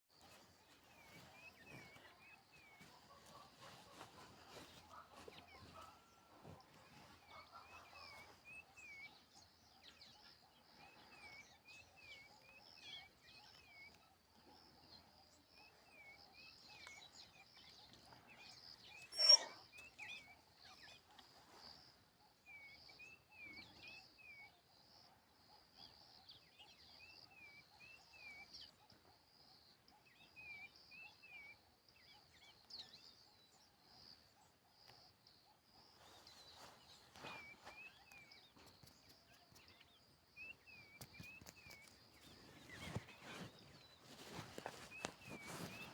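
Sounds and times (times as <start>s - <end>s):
birds chirping: 16.1s - 20.8s, 35.9s - 45.9s
loud bird squawk: 19.2s - 19.6s.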